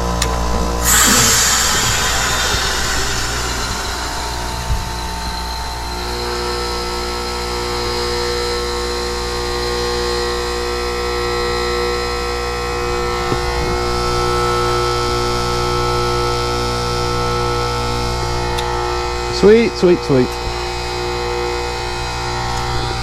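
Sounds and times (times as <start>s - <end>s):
heat pump compressor humming: 0.8s - 9.8s.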